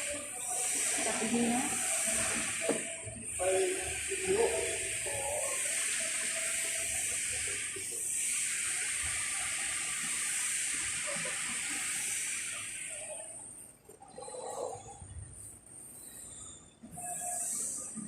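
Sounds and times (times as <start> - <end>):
steady hiss: 0.0 - 13.5.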